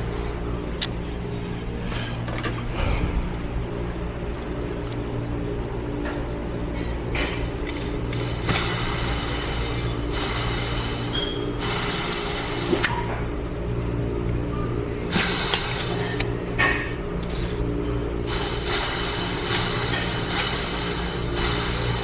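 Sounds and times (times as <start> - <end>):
steady low hum: 0.0 - 22.0
compressed air hissing blasts: 7.7 - 13.0, 15.1 - 16.2, 18.2 - 22.0.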